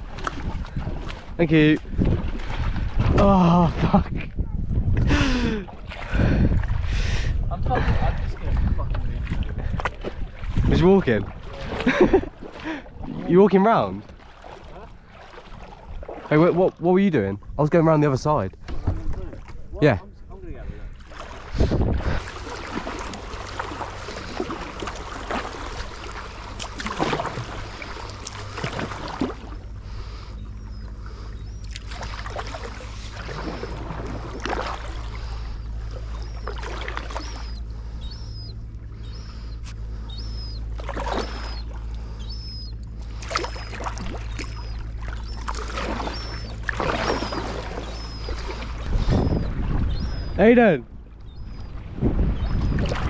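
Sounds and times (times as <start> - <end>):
paddles splashing in water: 0.0 - 4.3, 5.0 - 17.2, 17.8 - 19.8, 20.9 - 53.0
steady low hum: 0.0 - 53.0
faint high chirp: 30.3 - 32.6, 35.5 - 50.5.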